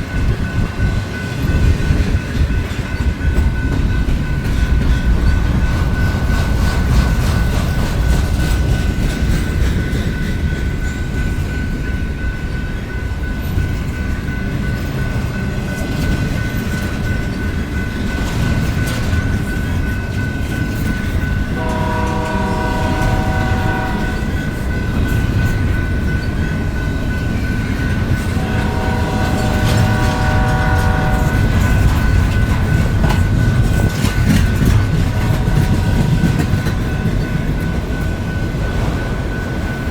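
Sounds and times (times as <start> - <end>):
train cars rumbling past: 0.0 - 39.9
wheels clickety-clack: 0.0 - 39.9
locomotive horn chords: 21.6 - 24.3, 28.4 - 31.6, 35.1 - 36.2.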